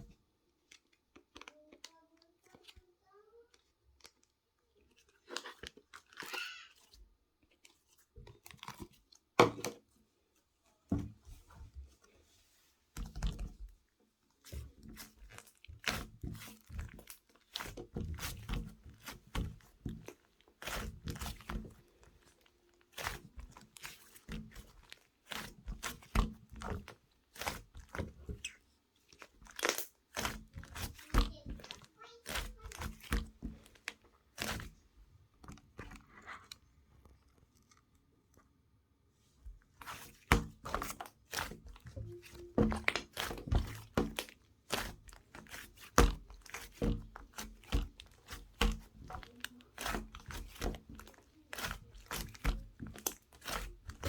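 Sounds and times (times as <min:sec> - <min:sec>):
crunching and crackling: 0:14.4 - 0:38.5, 0:39.6 - 0:54.0.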